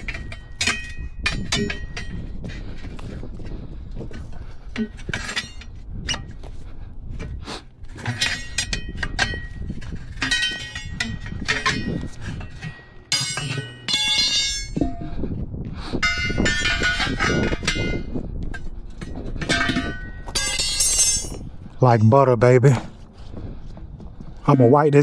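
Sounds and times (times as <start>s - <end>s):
steel tools clinking on wheel: 0.0s - 2.2s, 4.8s - 6.3s, 8.0s - 15.2s, 16.0s - 21.4s.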